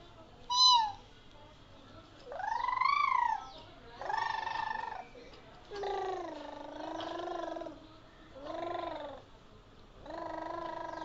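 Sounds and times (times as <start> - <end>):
baby making vocal noises: 5.7 - 7.8, 8.4 - 9.2, 10.0 - 11.0.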